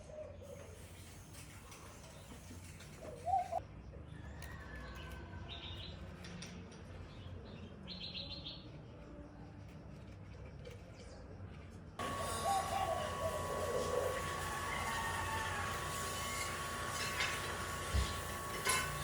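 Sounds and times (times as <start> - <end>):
birds chirping: 12.0 - 16.4.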